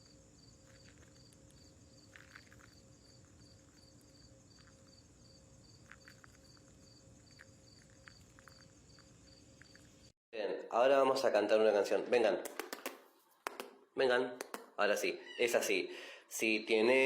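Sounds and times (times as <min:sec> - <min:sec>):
cricket chirping: 0:00.0 - 0:10.2.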